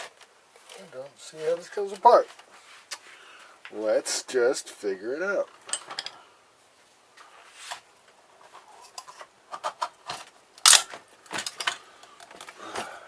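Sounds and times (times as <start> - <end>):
clicks and knocks of filter parts: 8.5 - 12.9.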